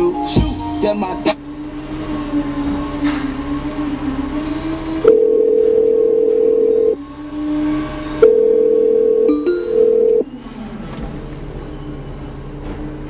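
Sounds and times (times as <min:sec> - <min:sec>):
phone ringback tone: 0:05.1 - 0:07.0, 0:08.2 - 0:10.3.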